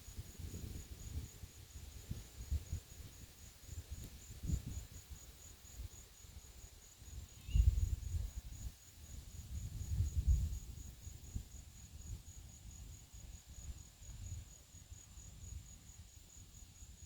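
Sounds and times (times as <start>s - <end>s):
high insect trill: 0.0s - 17.0s
wind buffeting microphone: 0.1s - 5.2s, 7.2s - 12.3s.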